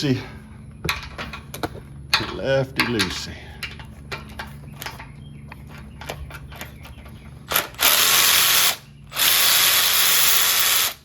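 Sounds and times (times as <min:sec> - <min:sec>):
ratchet wrench clicking: 0:07.5 - 0:11.0.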